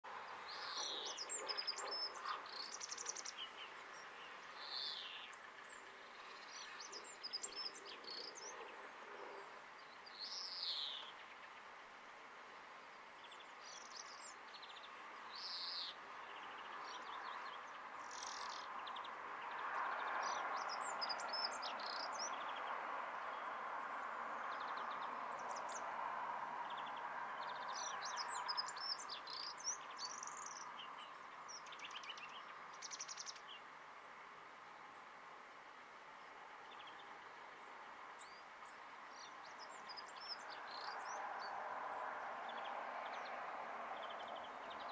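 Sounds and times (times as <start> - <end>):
steady background hiss: 0.1 - 44.9
birds singing and calling: 0.4 - 11.6, 13.2 - 23.5, 26.7 - 33.7, 36.6 - 43.4.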